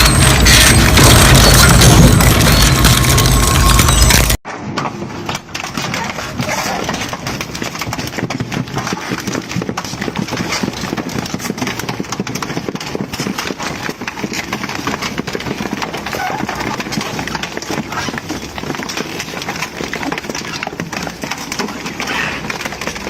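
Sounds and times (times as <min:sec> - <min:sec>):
shredding machine running: 0:00.0 - 0:04.4.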